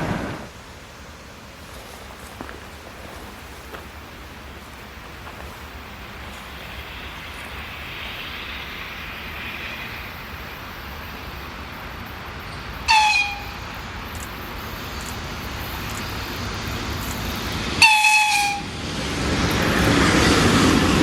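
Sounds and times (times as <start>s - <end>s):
train approaching: 0.0s - 21.0s
high-pitched train horn: 12.9s - 13.8s, 17.8s - 18.8s.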